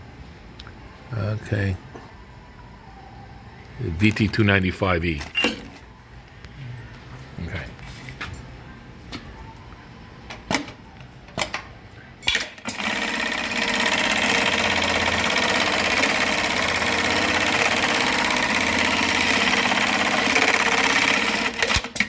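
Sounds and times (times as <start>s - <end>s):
sewing machine stitching: 12.3s - 22.0s.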